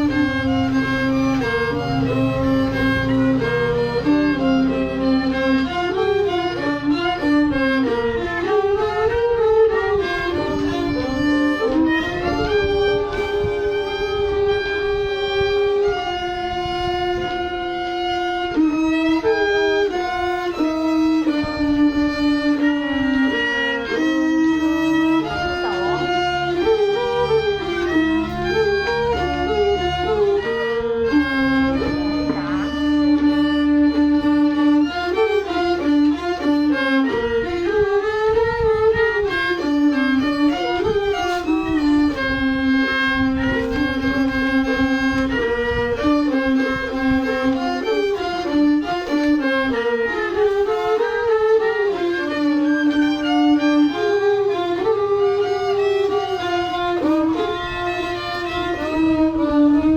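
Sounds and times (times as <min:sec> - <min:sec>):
low drone: 0:00.0 - 0:38.3
fiddle solo melody: 0:00.0 - 0:59.9.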